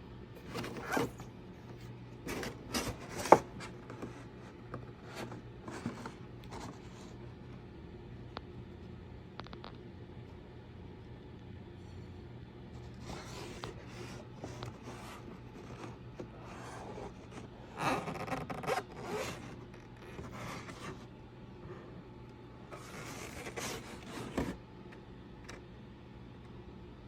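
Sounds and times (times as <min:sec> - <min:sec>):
steady low hum: 0:00.0 - 0:27.0
plastic airbox scraping: 0:00.4 - 0:07.2, 0:12.8 - 0:22.0, 0:22.7 - 0:24.6.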